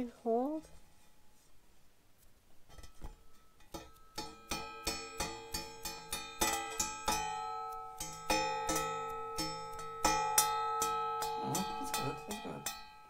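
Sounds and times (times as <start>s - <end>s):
plucked string music: 2.8s - 12.9s.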